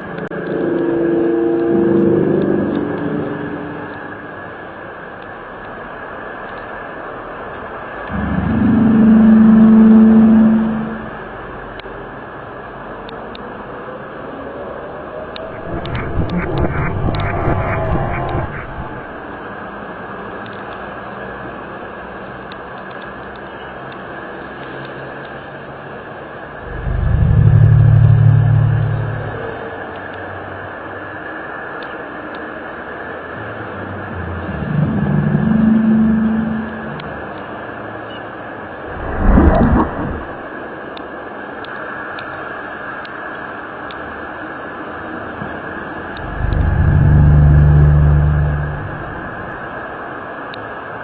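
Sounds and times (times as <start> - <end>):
low droning tone: 0.0 - 4.7, 8.1 - 11.4, 15.2 - 19.4, 26.6 - 29.7, 33.8 - 37.5, 38.8 - 40.6, 46.2 - 49.8
faint low hum: 15.2 - 19.3, 26.6 - 29.6, 46.1 - 49.8.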